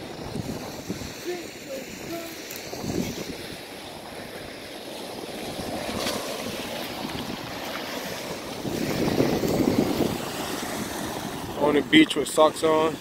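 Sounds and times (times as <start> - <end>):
wind on microphone: 0.0 - 11.9
surf washing onto rocky beach: 0.0 - 13.0.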